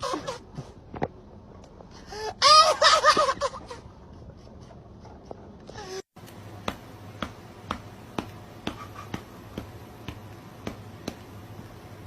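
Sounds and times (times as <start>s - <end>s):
sharp evenly spaced snaps: 6.2s - 12.0s.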